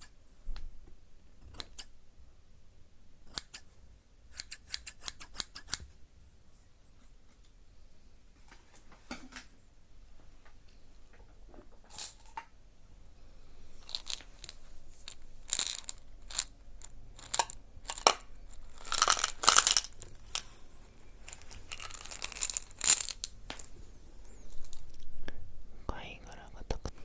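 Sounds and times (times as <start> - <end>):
crackling and rustling handling noise: 13.5 - 25.3.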